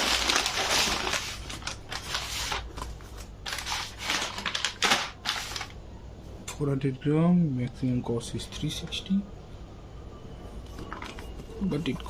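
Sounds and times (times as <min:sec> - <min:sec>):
plastic packaging crinkling: 0:00.0 - 0:05.8.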